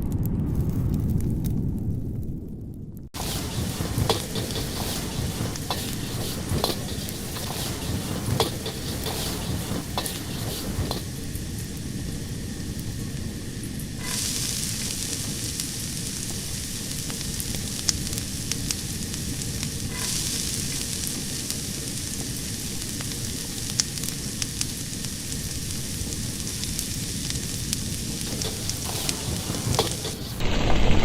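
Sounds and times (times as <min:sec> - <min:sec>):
fire crackling and popping: 0:00.0 - 0:30.8
deep rushing noise: 0:03.2 - 0:14.0.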